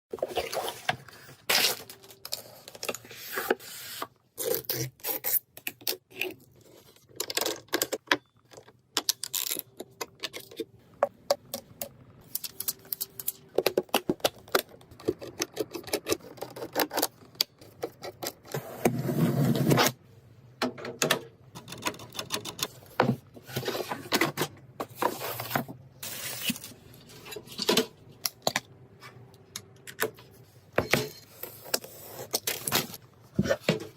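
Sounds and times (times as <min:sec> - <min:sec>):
computer parts clicking and tapping: 0:20.6 - 0:23.1.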